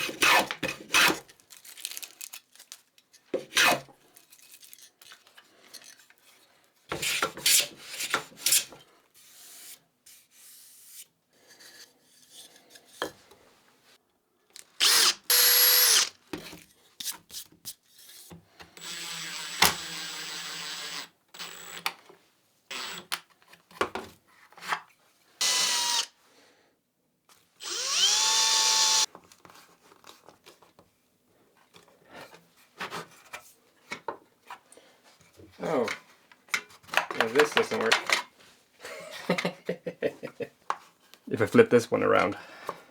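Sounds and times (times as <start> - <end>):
power drill running: 14.8 - 16.1, 18.8 - 21.8, 22.7 - 23.1, 25.4 - 26.1, 27.6 - 29.1.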